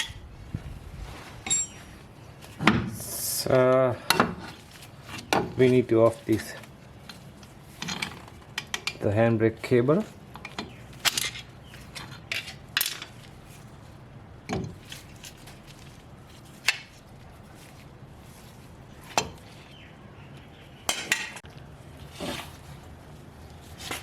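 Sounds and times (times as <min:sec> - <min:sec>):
metal tools clinking: 0:01.4 - 0:02.0, 0:10.4 - 0:11.5.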